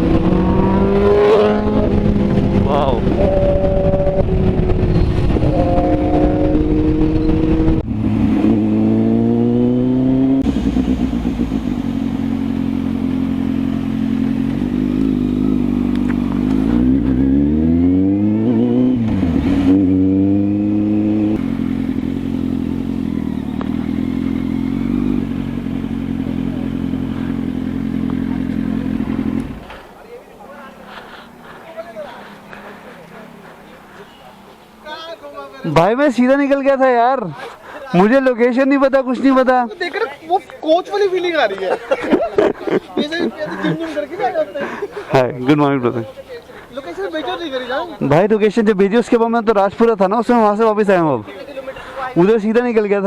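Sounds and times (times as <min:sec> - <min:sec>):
motorcycle engine running: 0:00.0 - 0:29.8
wind and road noise: 0:00.0 - 0:53.0.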